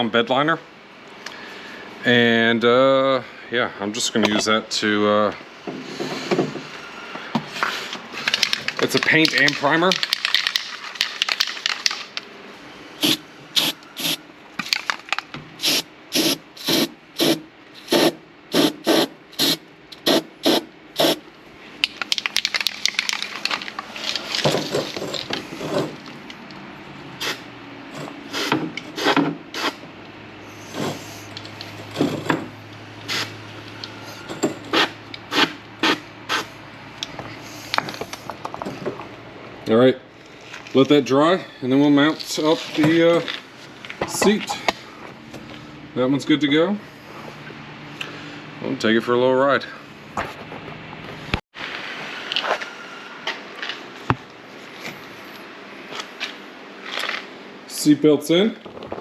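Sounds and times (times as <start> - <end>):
aerosol can spraying: 13.0 - 14.2, 15.6 - 21.2.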